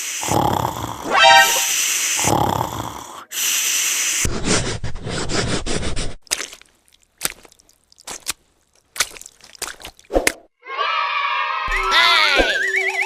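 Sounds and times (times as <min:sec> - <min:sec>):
cartoon snoring: 0:00.0 - 0:03.3.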